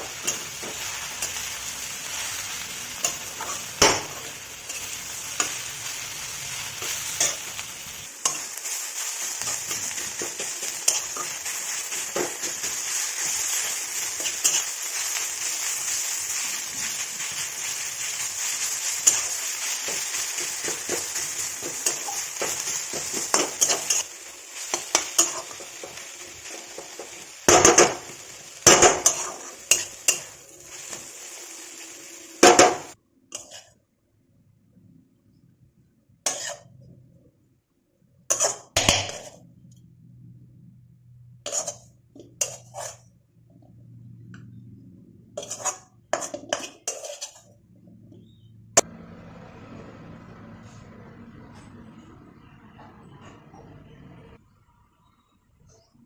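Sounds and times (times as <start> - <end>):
leaves sizzling in a pan: 0.0 - 33.6, 41.5 - 43.0
spatula scraping a pan: 0.0 - 33.7, 36.3 - 36.8, 38.3 - 39.4, 41.4 - 43.2, 45.4 - 47.6.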